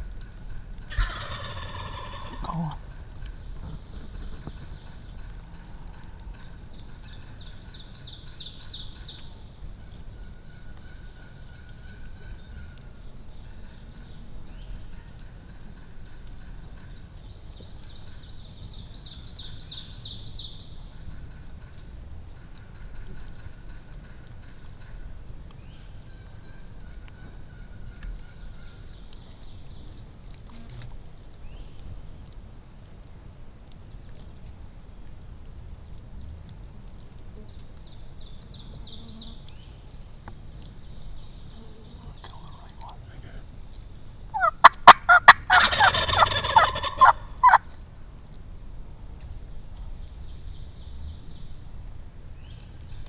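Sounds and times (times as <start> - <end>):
wild turkey gobbling: 0.3 - 8.0, 42.0 - 43.4, 44.3 - 47.8
birds calling: 0.4 - 9.3, 40.9 - 47.8.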